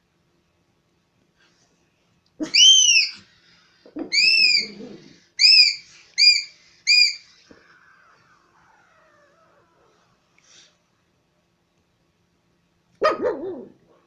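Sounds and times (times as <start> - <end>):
small dog yelping: 2.4 - 3.2, 4.0 - 10.1, 13.0 - 13.8.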